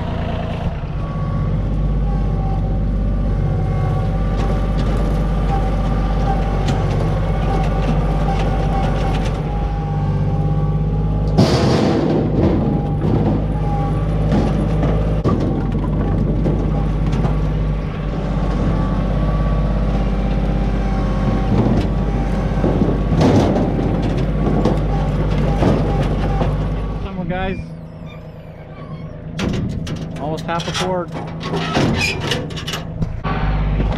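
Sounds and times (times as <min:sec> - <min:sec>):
loader engine running: 0:00.0 - 0:33.9
firewood clattering: 0:11.3 - 0:18.8, 0:20.3 - 0:27.0.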